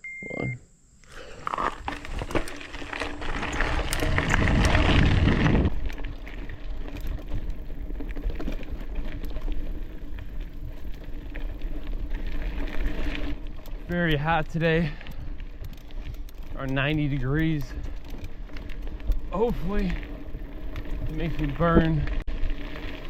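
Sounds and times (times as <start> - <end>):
bicycle clicks and rattles: 1.0 - 23.0
wind rushing over microphone: 3.2 - 6.0.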